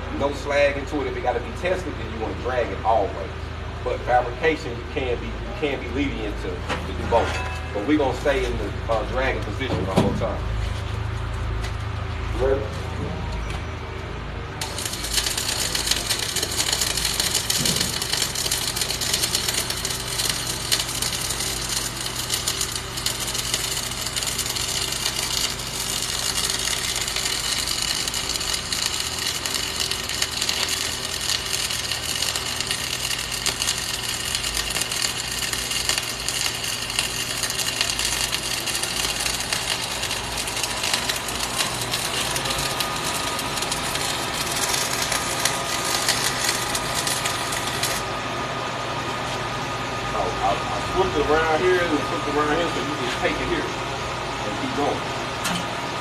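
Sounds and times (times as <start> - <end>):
steady low hum: 0.0 - 56.0
welding arc crackling: 14.6 - 48.2, 50.1 - 53.6.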